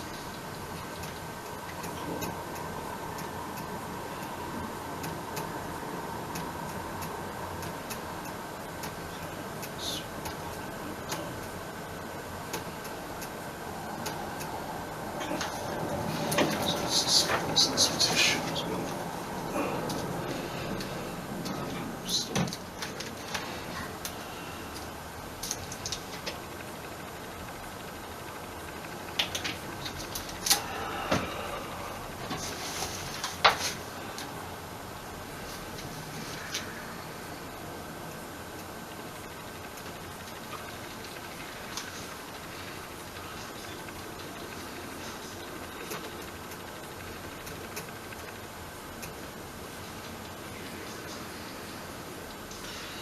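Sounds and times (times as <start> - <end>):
microphone noise hiss: 0.0 - 53.0
scattered clicks and knocks: 6.2 - 11.6, 15.2 - 19.1, 19.8 - 31.4.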